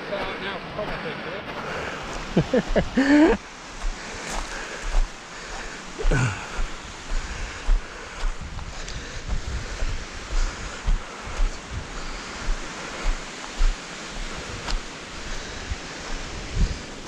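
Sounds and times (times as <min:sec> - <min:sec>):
surf washing on beach: 0:00.0 - 0:17.0
wind buffeting microphone: 0:01.8 - 0:17.0.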